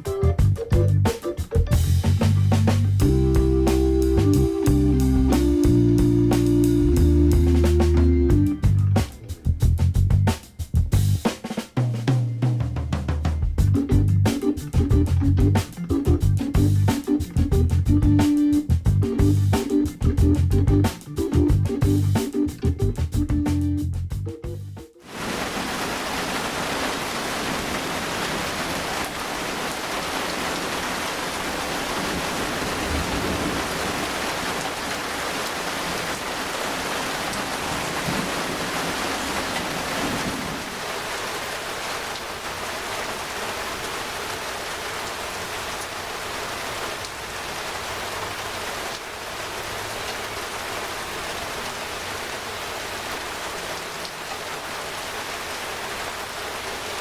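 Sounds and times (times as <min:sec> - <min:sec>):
steady rain falling: 0:00.0 - 0:10.2, 0:25.0 - 0:57.0.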